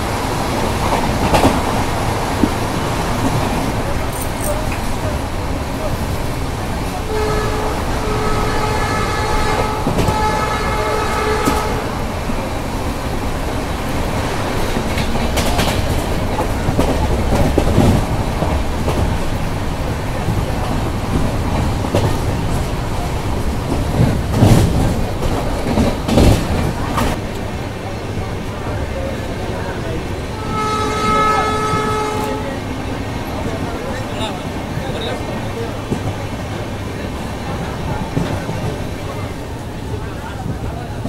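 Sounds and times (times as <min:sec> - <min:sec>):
train rumbling on track: 0:00.0 - 0:41.0
wheels clattering on rail joints: 0:00.0 - 0:41.0
train horn chord: 0:07.1 - 0:12.0, 0:30.3 - 0:32.6.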